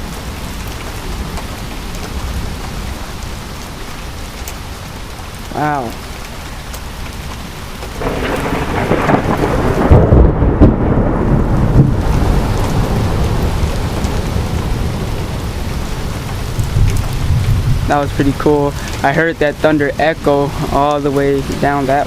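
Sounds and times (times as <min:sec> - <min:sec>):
steady rain: 0:00.0 - 0:22.0
thunder rumbling: 0:08.0 - 0:22.0.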